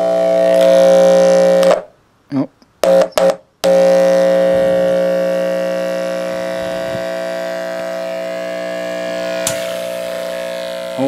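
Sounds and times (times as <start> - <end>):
speakers buzzing with mains hum: 0.0 - 11.0
electric spark crackle: 0.4 - 1.9, 3.0 - 11.0.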